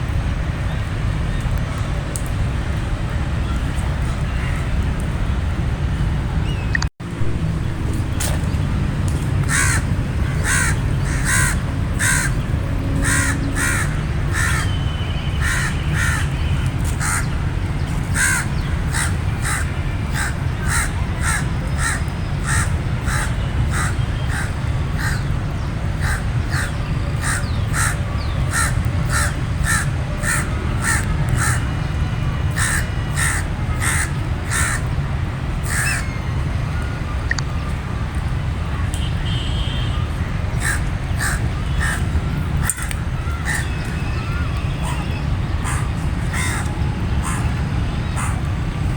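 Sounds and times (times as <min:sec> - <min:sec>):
steady low rumble: 0:00.0 - 0:15.1
crows cawing: 0:09.4 - 0:12.4, 0:13.0 - 0:14.7, 0:15.4 - 0:16.3, 0:17.0 - 0:17.3, 0:18.2 - 0:25.2, 0:26.0 - 0:31.6, 0:32.6 - 0:34.8, 0:40.6 - 0:42.0, 0:43.3 - 0:45.0, 0:45.6 - 0:47.5.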